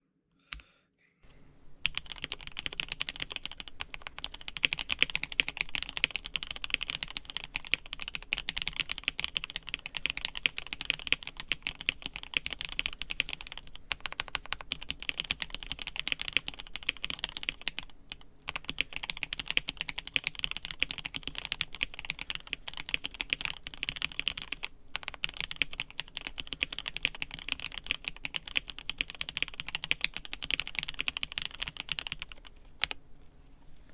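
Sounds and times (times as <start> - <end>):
fast mechanical keyboard typing: 1.8 - 33.0.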